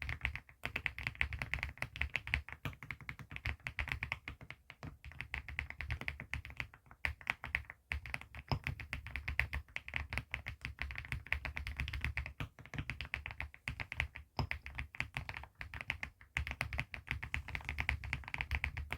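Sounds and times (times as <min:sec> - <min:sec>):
fast mechanical keyboard typing: 0:00.0 - 0:18.9.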